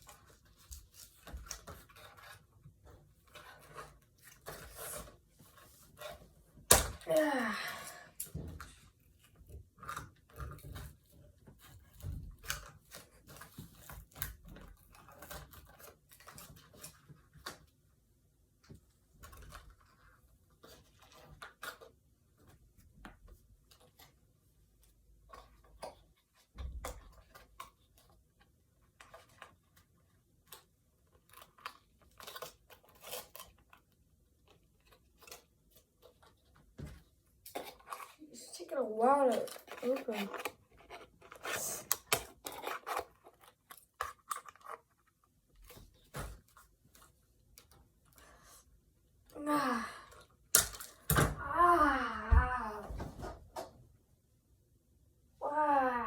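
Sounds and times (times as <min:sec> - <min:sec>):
packaging crinkling and rustling: 0:39.4 - 0:48.2.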